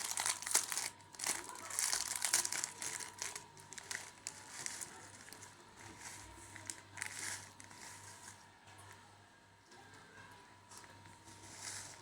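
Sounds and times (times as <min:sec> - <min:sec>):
plastic snack packet crinkling: 0:00.0 - 0:08.0.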